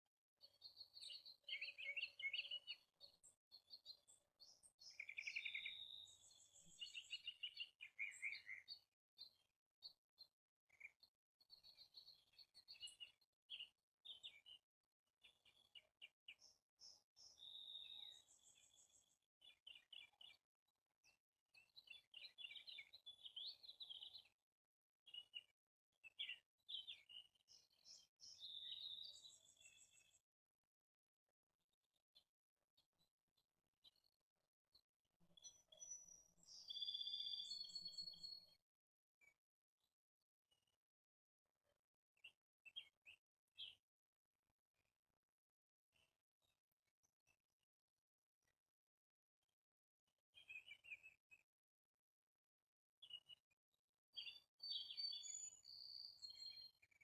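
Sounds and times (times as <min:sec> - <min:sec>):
songbirds chirping and singing: 0:00.4 - 0:10.0, 0:10.7 - 0:14.6, 0:15.2 - 0:20.4, 0:21.0 - 0:24.4, 0:25.1 - 0:30.2, 0:35.4 - 0:38.6, 0:54.2 - 0:57.0.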